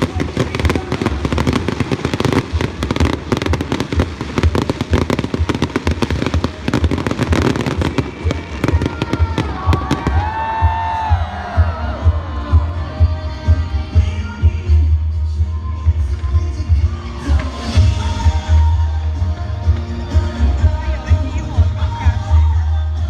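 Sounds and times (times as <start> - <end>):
fireworks bangs and crackling: 0.0 - 12.8.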